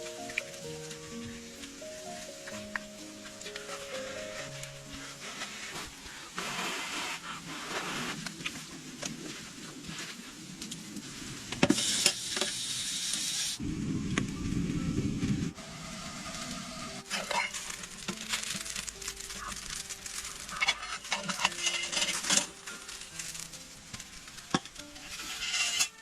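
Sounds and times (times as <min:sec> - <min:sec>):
food sizzling: 0:00.0 - 0:08.3, 0:10.8 - 0:13.7, 0:15.4 - 0:26.0
quiet background music: 0:00.0 - 0:10.2, 0:13.6 - 0:26.0
utensils scraping a pan: 0:17.0 - 0:23.4, 0:24.5 - 0:26.0.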